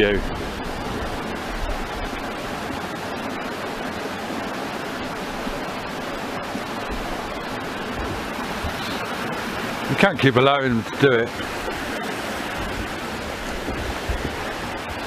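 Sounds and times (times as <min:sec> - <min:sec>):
strong wind rushing: 0:00.0 - 0:03.0, 0:11.3 - 0:15.0
wind buffeting microphone: 0:00.0 - 0:15.0.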